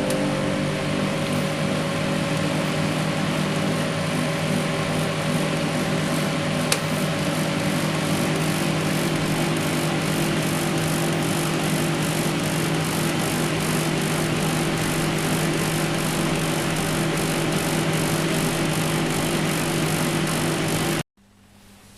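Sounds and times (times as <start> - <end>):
dehumidifier hum: 0.0 - 21.9
dehumidifier click: 6.6 - 7.0.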